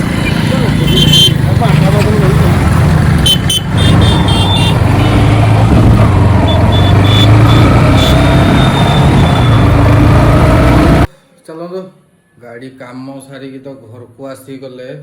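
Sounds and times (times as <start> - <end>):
motorcycle engine rumbling: 0.0 - 11.1.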